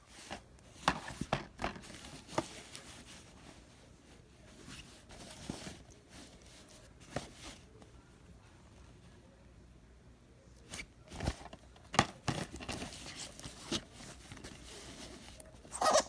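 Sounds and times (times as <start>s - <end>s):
faint rustling: 0.0s - 9.3s.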